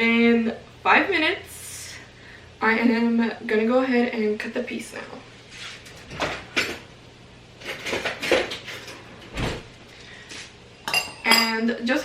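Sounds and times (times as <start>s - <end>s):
utensils and dishes clinking: 10.8s - 11.6s.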